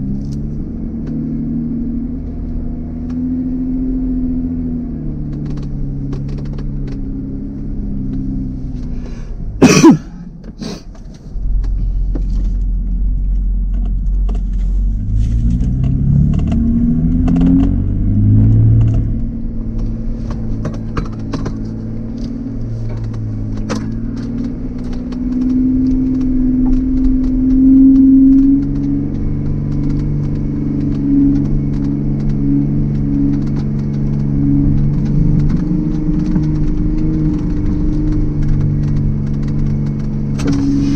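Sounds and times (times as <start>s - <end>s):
engine running at low revs: 0.0s - 40.9s
wind rumble on microphone: 11.2s - 40.9s.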